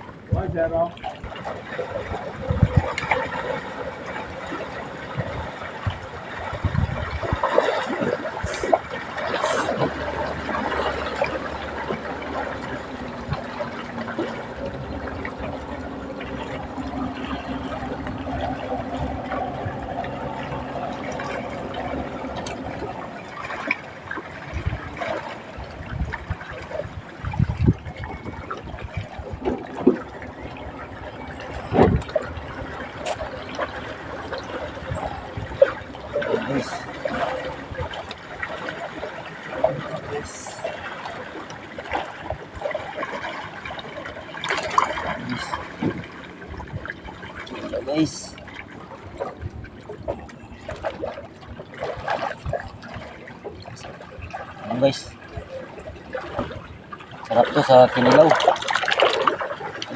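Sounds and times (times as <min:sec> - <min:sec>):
water splashing and trickling: 0:00.0 - 0:59.9
dull low bumps: 0:09.7 - 0:36.2.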